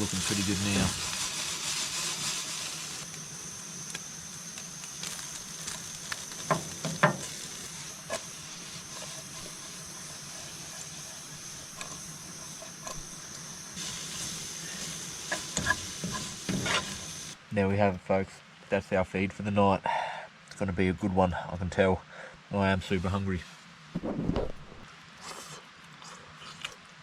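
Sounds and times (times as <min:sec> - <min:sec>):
meat sizzling in a pan: 0:00.0 - 0:17.4.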